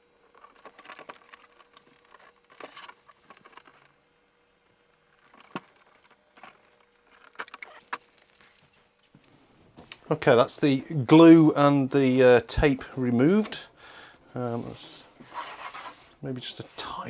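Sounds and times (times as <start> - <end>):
tape peeling off plastic: 7.1 - 8.1.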